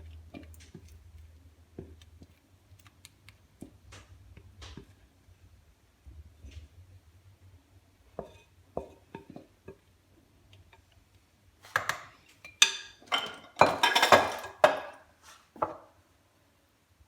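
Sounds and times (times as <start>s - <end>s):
kitchenware clinking on metal: 11.7s - 15.0s.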